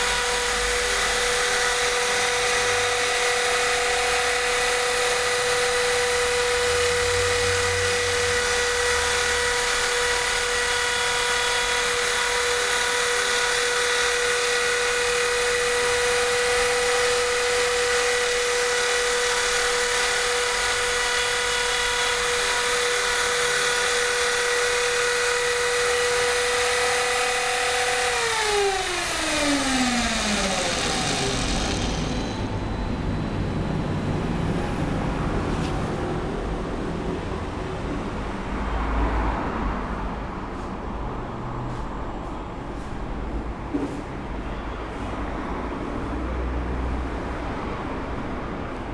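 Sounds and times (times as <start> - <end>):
spindle motor whine: 0.0 - 35.7
low rumbling noise: 29.0 - 38.0.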